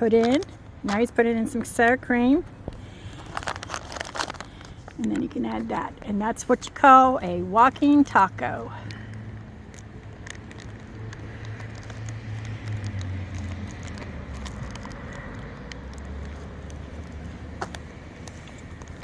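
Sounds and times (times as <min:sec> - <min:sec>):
vehicle engine humming: 0:00.0 - 0:19.0
rustling: 0:02.7 - 0:05.6.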